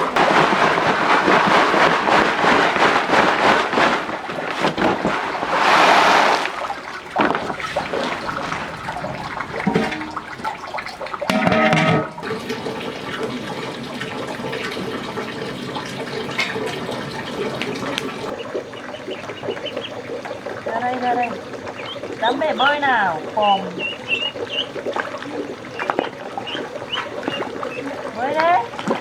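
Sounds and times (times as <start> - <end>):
running splashing water: 0.0 - 29.0.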